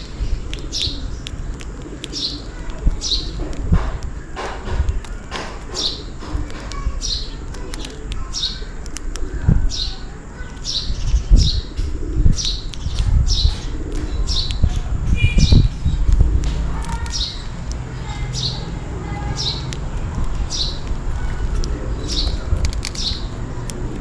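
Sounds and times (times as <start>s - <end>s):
sparrows chirping: 0.0s - 24.0s
low thumps and rumbling: 2.7s - 6.9s, 11.0s - 24.0s.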